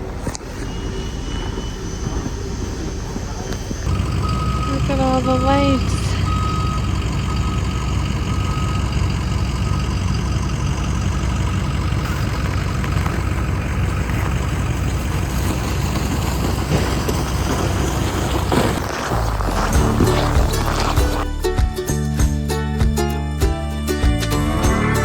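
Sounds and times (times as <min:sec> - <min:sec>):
engine idling: 0:00.0 - 0:25.0
thin high tone: 0:23.9 - 0:25.0.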